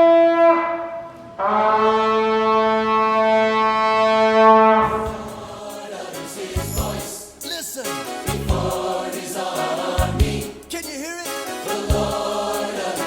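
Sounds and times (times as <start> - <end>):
shofar blasts: 0.0 - 5.6.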